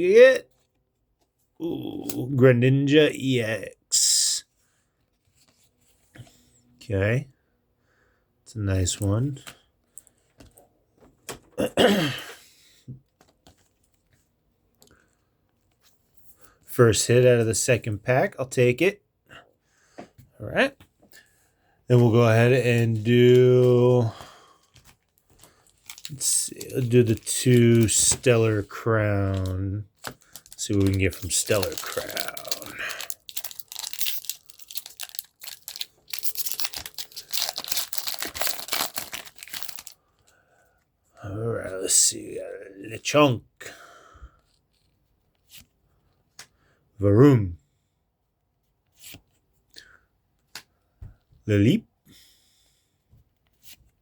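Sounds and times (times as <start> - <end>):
man's breathy wordless vocal: 23.8 - 24.7, 31.7 - 33.2
foil wrapper crinkling and tearing: 25.2 - 40.1.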